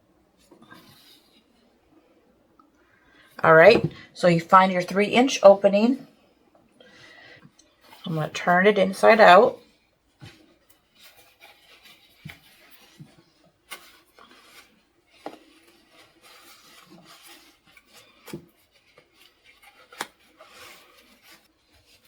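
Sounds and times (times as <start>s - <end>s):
fabric rustling and rubbing: 7.8s - 22.0s.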